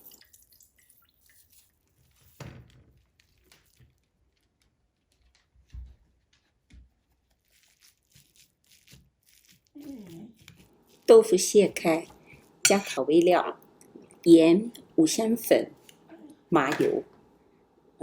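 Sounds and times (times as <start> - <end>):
soft squishes of wet cloth: 0.0 - 12.6.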